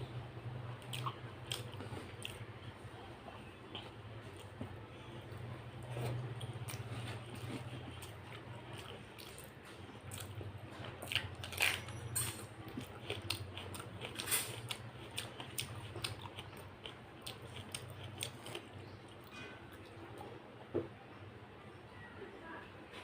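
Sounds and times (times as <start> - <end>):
steady low hum: 0.0 - 23.0
wet chewing clicks and smacks: 0.8 - 2.5, 6.3 - 12.0, 12.6 - 20.0.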